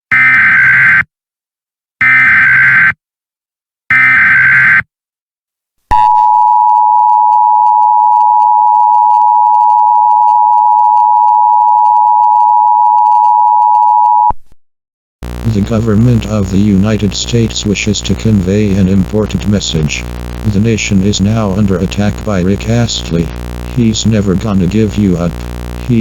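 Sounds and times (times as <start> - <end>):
two-tone alarm: 0.1 - 1.1, 2.0 - 3.0, 3.9 - 4.9, 6.0 - 14.3
buzzing data tones: 15.2 - 26.0.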